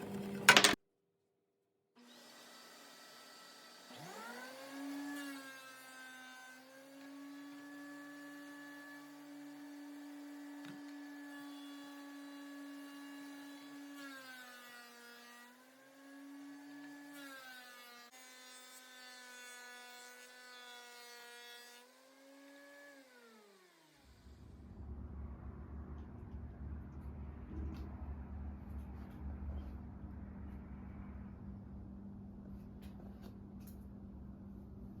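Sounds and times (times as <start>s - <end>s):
planer motor humming: 0.0s - 0.8s.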